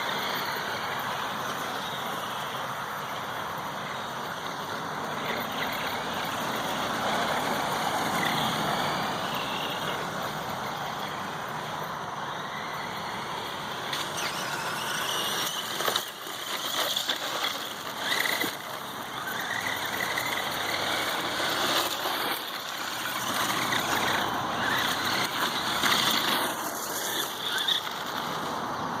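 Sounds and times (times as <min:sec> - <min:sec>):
toy truck motor and gear whine: 0:00.0 - 0:29.0.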